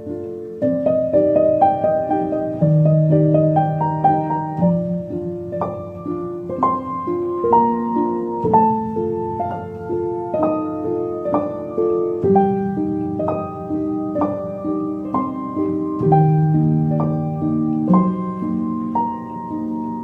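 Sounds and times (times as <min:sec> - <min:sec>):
gentle instrumental melody: 0:00.0 - 0:20.0.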